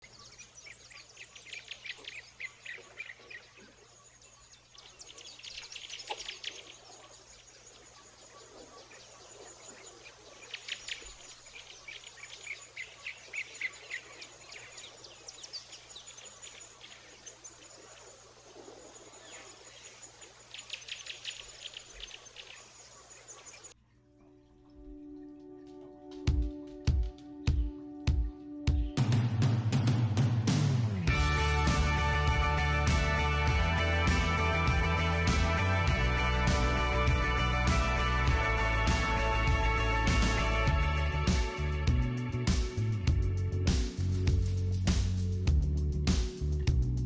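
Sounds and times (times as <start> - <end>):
high pulsing insect tone: 0.0 - 23.7
rapid bird chirps: 0.0 - 23.8.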